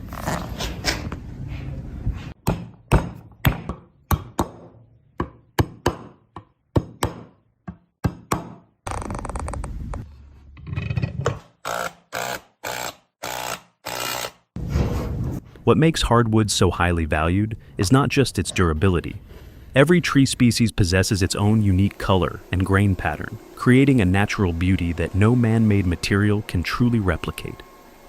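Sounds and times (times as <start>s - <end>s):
steady workshop noise: 10.0s - 15.7s, 18.2s - 28.0s.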